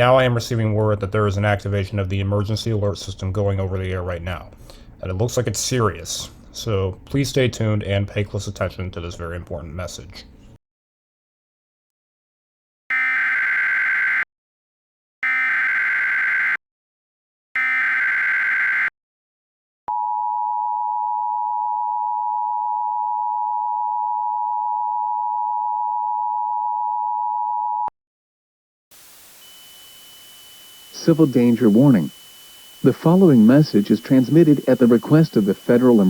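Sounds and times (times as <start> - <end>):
warbling digital header data: 29.5 - 36.0.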